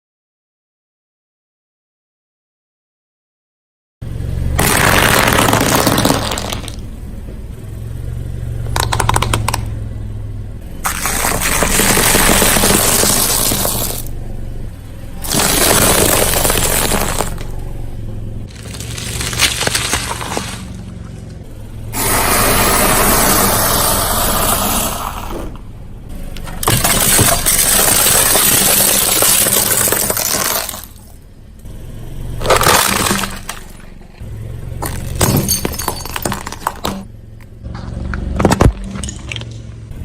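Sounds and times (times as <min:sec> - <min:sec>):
car engine running: 0:04.0 - 0:40.0
dry noodles crunching under tyre: 0:04.6 - 0:06.8, 0:15.2 - 0:17.6, 0:18.5 - 0:21.5.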